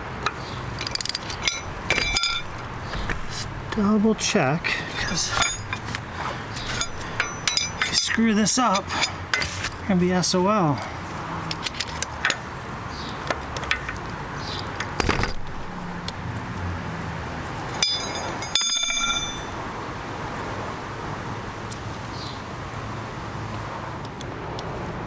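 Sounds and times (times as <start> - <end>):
metal tools clicking and clinking: 0.2 - 3.4, 4.8 - 9.8, 10.6 - 12.5, 13.6 - 14.0, 17.7 - 19.6
ringing metallic clink: 0.8 - 2.6, 5.0 - 5.8, 6.6 - 9.2, 17.8 - 19.6.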